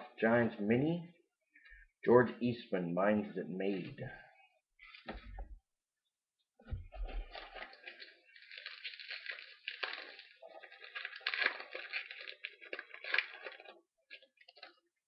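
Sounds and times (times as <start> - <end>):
wrapper crinkling and tearing: 7.0 - 15.0.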